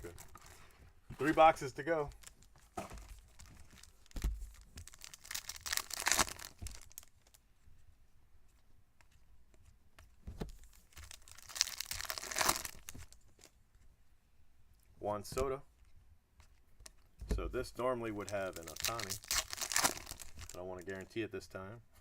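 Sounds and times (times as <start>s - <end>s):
card pack wrappers tearing and crinkling: 3.1s - 7.4s, 10.9s - 13.2s, 18.1s - 20.6s.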